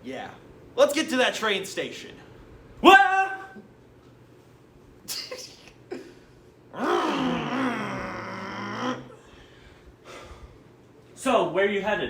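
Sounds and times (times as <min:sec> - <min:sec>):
man groaning: 0:06.8 - 0:09.2.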